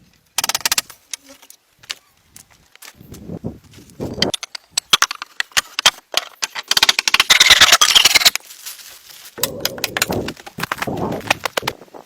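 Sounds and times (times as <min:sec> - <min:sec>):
sharp clicks and knocks: 0:00.4 - 0:01.2, 0:04.1 - 0:08.4, 0:09.4 - 0:11.8.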